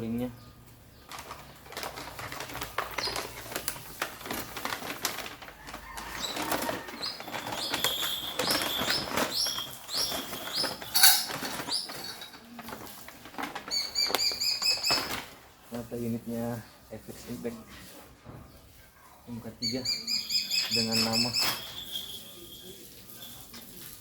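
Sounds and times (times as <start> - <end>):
bird chirping: 0.0 - 1.6, 6.0 - 12.5, 13.6 - 15.3, 18.5 - 23.7.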